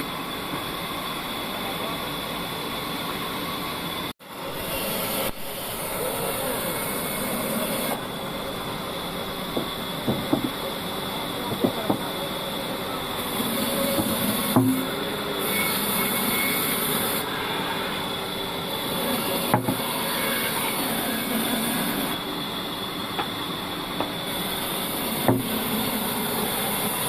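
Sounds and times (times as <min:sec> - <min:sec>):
bandsaw cutting log: 0:04.4 - 0:08.1, 0:13.1 - 0:22.2, 0:24.1 - 0:27.0
wooden knocks: 0:09.6 - 0:10.6.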